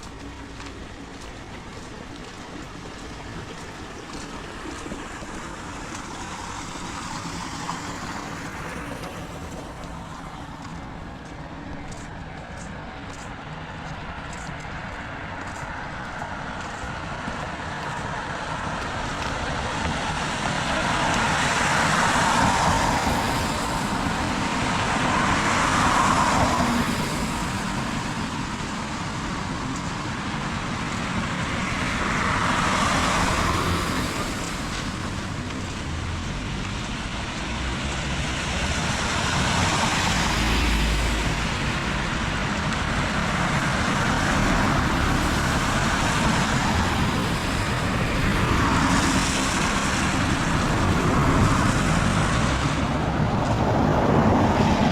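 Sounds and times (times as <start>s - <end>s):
heavy rain falling: 17.1s - 54.9s.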